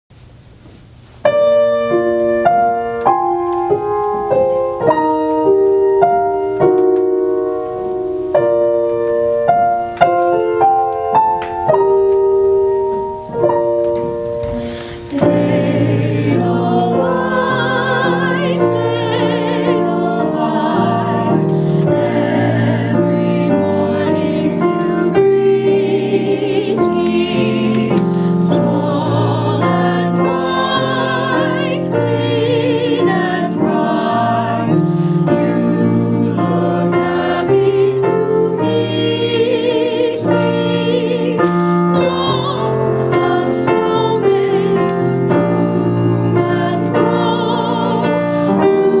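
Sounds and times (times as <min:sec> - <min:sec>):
piano playing: 0:01.2 - 0:49.0
voices singing in harmony: 0:12.9 - 0:49.0.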